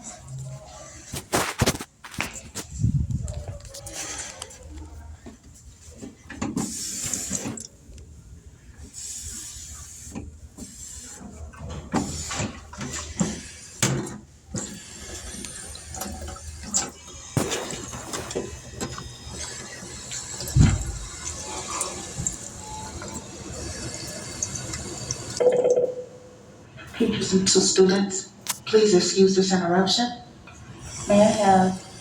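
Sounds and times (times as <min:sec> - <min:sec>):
footsteps: 0:01.1 - 0:06.2, 0:17.4 - 0:18.6
drinking fountain water spurts: 0:06.6 - 0:07.7, 0:14.5 - 0:25.4.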